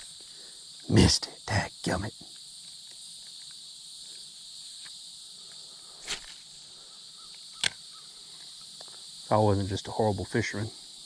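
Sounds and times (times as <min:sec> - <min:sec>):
insects trilling: 0:00.0 - 0:11.0
sharp clicks: 0:07.3 - 0:07.8.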